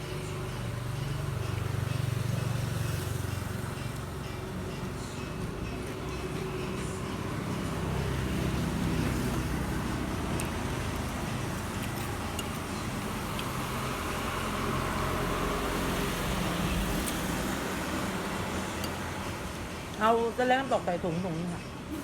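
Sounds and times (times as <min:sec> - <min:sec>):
road traffic noise: 0:00.0 - 0:22.0
vehicle passing by: 0:06.4 - 0:21.2.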